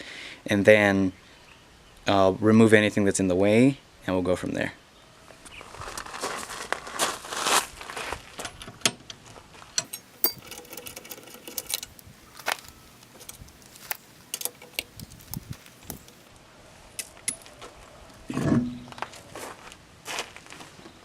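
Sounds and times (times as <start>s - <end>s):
rustling: 9.2s - 16.3s
metallic tool clicks and clatter: 9.8s - 16.2s.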